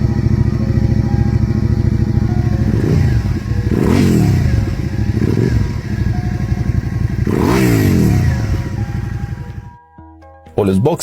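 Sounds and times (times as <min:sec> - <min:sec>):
motorcycle engine idling: 0:00.0 - 0:09.8
motorcycle engine revving: 0:00.0 - 0:09.8.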